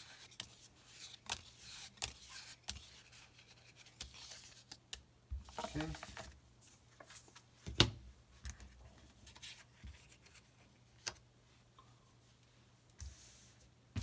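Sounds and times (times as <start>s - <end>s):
trading cards being handled: 5.4s - 6.3s.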